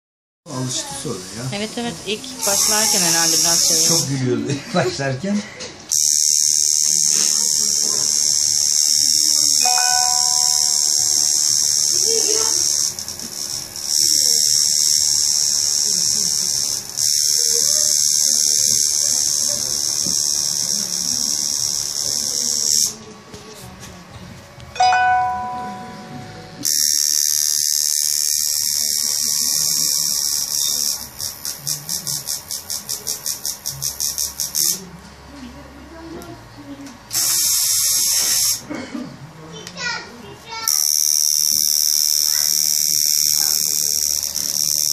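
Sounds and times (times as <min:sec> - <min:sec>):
tattoo machine buzzing: 0:01.1 - 0:04.2, 0:05.9 - 0:23.1, 0:25.4 - 0:34.9, 0:37.1 - 0:38.7, 0:40.5 - 0:44.9.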